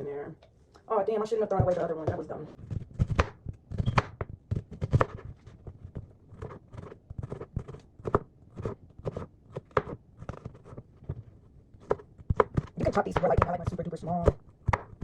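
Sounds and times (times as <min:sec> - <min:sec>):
knife chopping on cutting board: 0:03.0 - 0:05.2, 0:06.3 - 0:11.2, 0:11.8 - 0:15.0.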